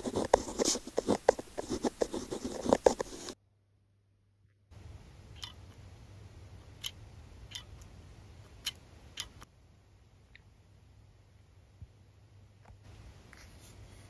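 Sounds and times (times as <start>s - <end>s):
low hiss: 4.7s - 14.0s.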